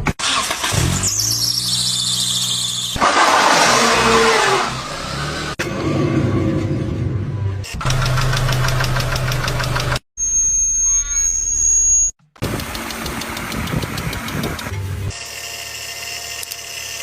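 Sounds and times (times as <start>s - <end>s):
car engine running: 12.2s - 15.2s.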